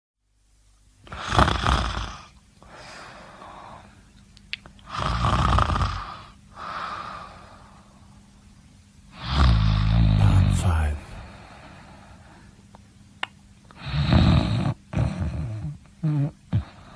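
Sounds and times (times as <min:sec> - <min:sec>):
soft breath: 0:02.6 - 0:04.1, 0:11.1 - 0:12.6
person snoring: 0:09.2 - 0:11.5.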